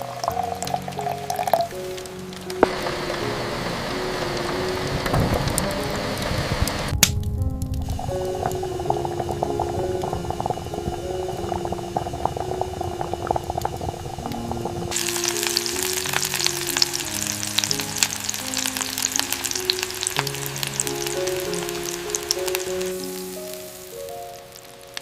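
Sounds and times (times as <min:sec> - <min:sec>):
gentle background music: 0:00.0 - 0:25.0
food sizzling in a pan: 0:07.9 - 0:25.0.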